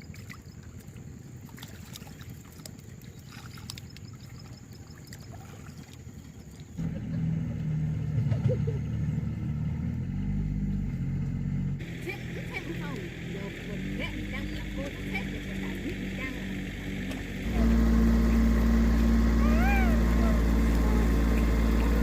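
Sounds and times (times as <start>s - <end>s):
small engine humming: 6.8s - 22.0s.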